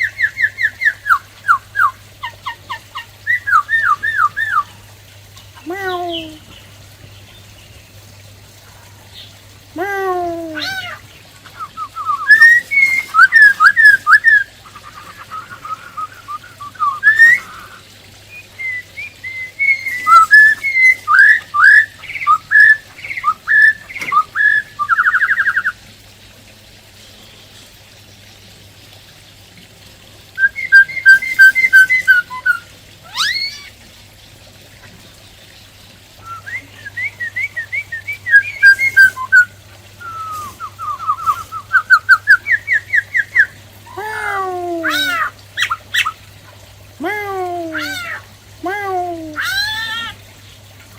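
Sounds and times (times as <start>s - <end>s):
laughingthrush singing: 9.7s - 25.7s, 36.2s - 46.3s, 46.9s - 50.2s.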